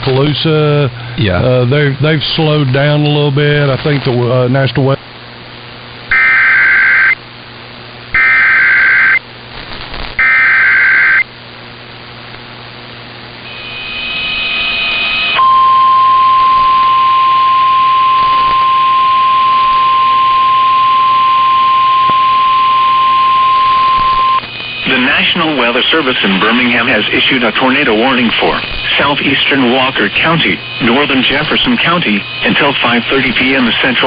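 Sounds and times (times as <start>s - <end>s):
digital data buzz bursts: 6.1s - 7.2s, 8.1s - 9.2s, 9.9s - 11.2s, 13.4s - 34.0s.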